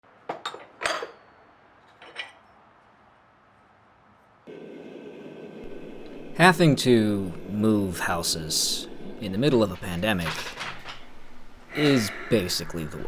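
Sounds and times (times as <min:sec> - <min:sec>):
steady hum: 0:04.5 - 0:13.0.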